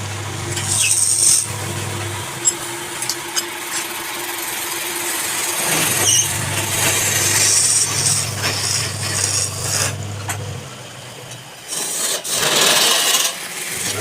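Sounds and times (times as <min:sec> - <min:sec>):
wood lathe motor humming: 0:00.0 - 0:11.4, 0:12.4 - 0:14.0
turning tool scraping wood: 0:00.5 - 0:04.2, 0:05.6 - 0:10.1.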